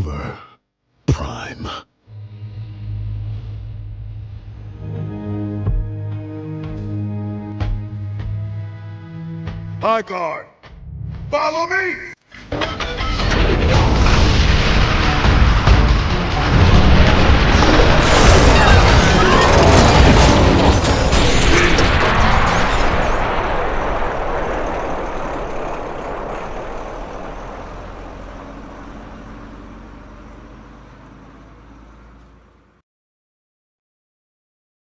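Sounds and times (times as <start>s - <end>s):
film music: 2.1s - 10.0s
booming rumble: 13.1s - 32.1s.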